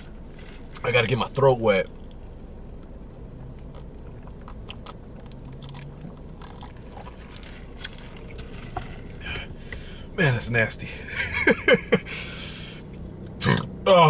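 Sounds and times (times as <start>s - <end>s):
chewing: 2.1s - 9.2s.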